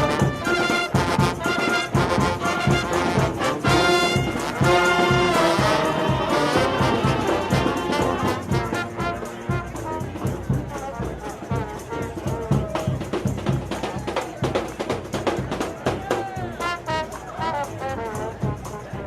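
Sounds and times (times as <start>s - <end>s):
sustained horn-like notes: 0.0s - 12.2s
music with steady beat: 0.0s - 19.0s.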